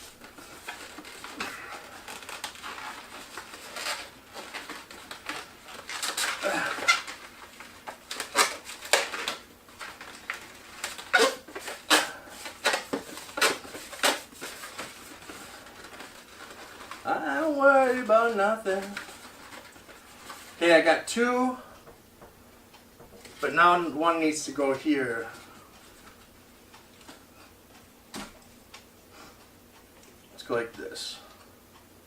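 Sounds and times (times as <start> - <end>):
balloons squeaking: 0.0 - 20.6.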